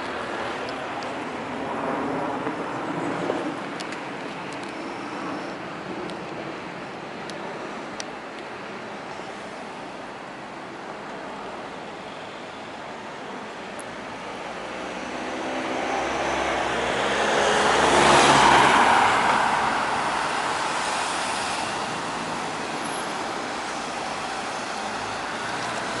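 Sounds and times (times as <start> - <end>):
traffic noise: 0.0 - 26.0
vehicle passing by: 14.4 - 23.0.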